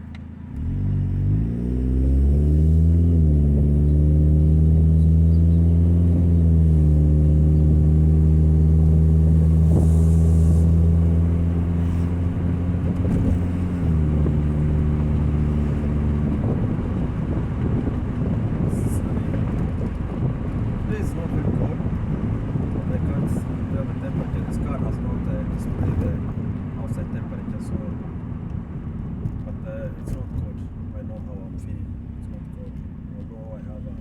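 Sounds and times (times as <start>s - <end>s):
car engine droning through leaky exhaust: 0.0s - 34.0s.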